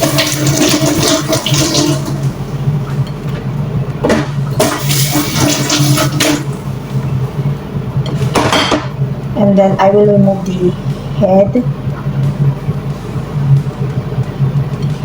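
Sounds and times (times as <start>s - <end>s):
tap water running into sink: 0.0s - 2.4s, 4.6s - 6.5s
steady low hum: 0.0s - 15.0s.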